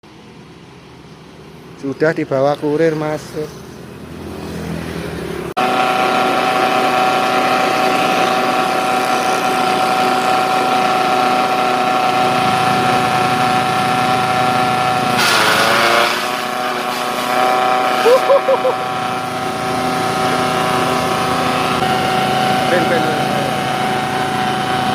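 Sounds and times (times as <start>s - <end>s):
grass chopper machine whine: 2.7s - 24.9s
burst of rough noise: 5.6s - 24.9s.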